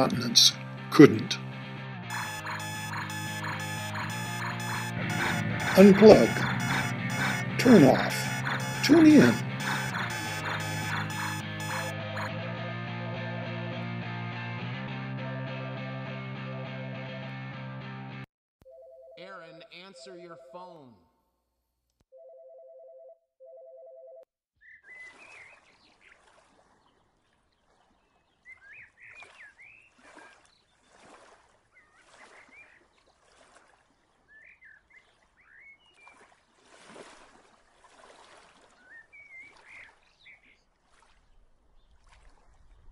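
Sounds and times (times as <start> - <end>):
birds chirping: 2.1 - 12.3
phone ringing two-note tone: 2.1 - 12.3.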